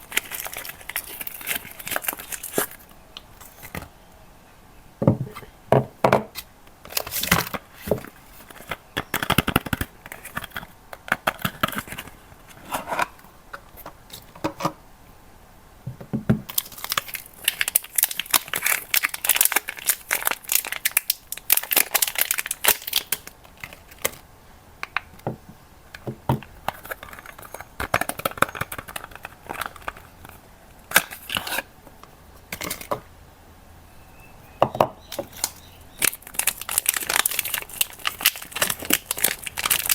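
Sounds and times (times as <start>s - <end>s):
wrappers tearing and crinkling: 0.0s - 2.8s, 16.5s - 24.2s, 35.4s - 39.9s.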